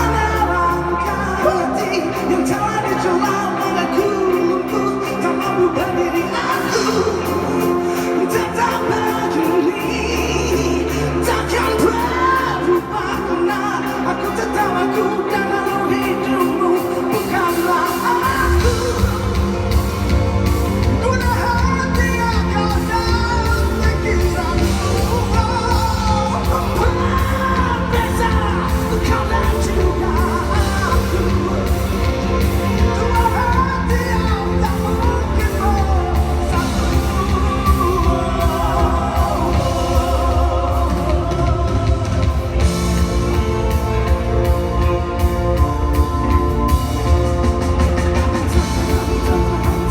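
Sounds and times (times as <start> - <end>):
person singing: 0.0 - 49.9
pop-rock band music: 0.0 - 49.9
driving drum and bass beat: 12.0 - 49.9.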